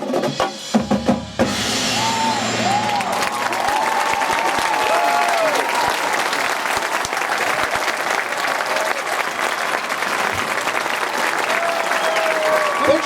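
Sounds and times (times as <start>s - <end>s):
crowd applauding and cheering: 1.8s - 13.0s
whoops: 1.9s - 7.6s, 11.4s - 13.0s.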